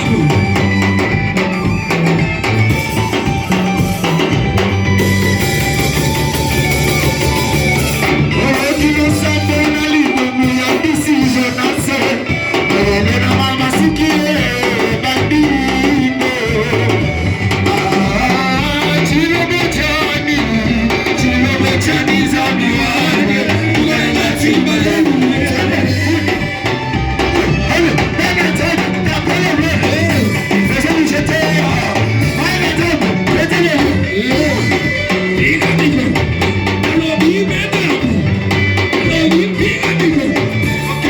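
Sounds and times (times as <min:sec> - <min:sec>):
band with drums and bass: 0:00.0 - 0:41.0
voices singing worship music: 0:08.4 - 0:41.0.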